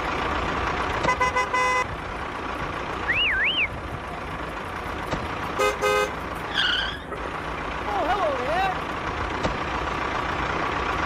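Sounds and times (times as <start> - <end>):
engine-like background noise: 0.0 - 11.0
vehicle horn toots: 1.0 - 1.9, 5.6 - 6.2
wavering whistle-like tone: 3.1 - 3.7.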